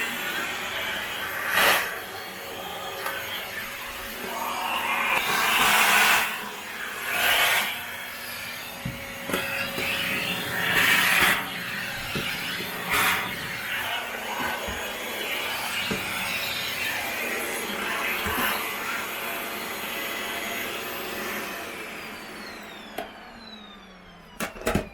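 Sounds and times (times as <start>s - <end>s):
vacuum cleaner suction hiss: 0.0s - 24.0s
vacuum motor hum: 0.0s - 24.9s
nozzle scraping floor: 0.3s - 7.8s, 8.5s - 19.7s.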